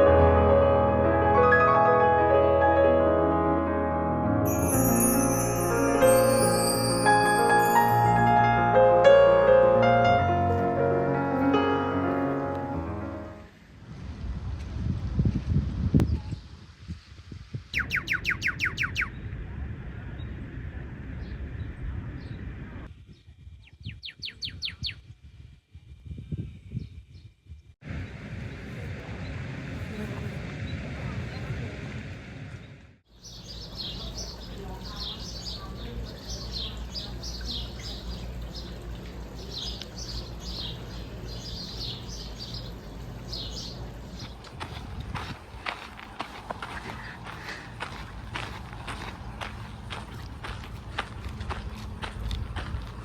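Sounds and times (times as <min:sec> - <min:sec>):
bird song: 0:17.8 - 0:19.3, 0:23.1 - 0:25.0, 0:33.1 - 0:44.8
low rumbling background noise: 0:27.8 - 0:53.0.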